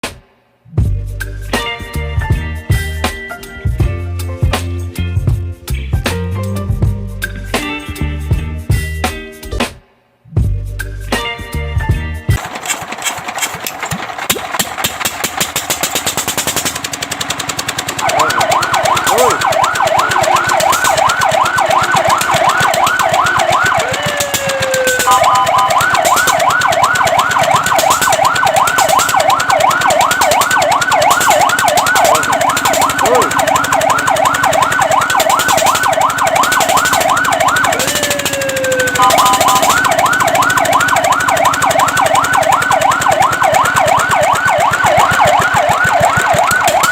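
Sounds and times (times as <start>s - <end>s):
fast even pulsing: 12.4s - 46.9s
siren yelping: 17.8s - 46.9s.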